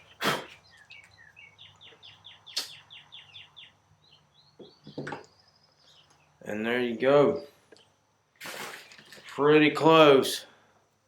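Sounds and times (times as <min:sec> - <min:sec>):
bird chirping: 0:00.0 - 0:08.0.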